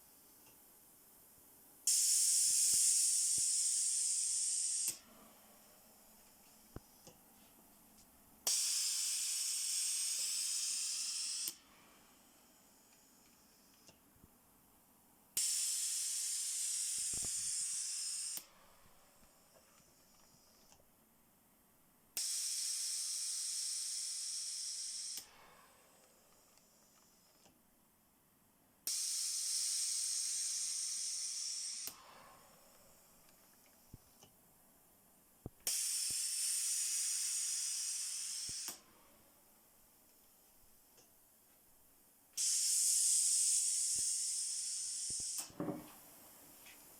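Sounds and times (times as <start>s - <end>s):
compressed air hissing through valve: 1.8s - 5.0s, 8.4s - 11.6s, 15.4s - 18.5s, 22.2s - 25.4s, 28.8s - 32.4s, 35.6s - 38.8s, 42.4s - 46.9s.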